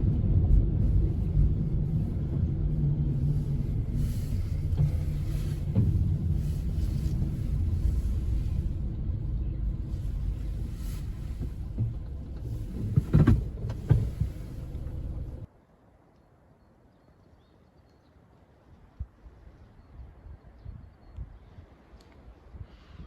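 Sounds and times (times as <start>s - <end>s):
wind buffeting microphone: 0.0s - 15.5s.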